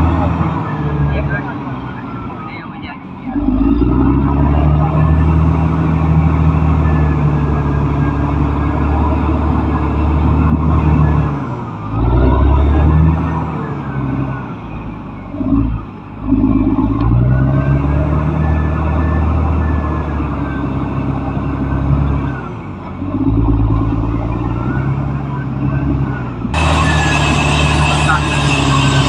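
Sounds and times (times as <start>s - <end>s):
bulldozer diesel engine: 0.0s - 29.0s
faint whine: 26.5s - 29.0s.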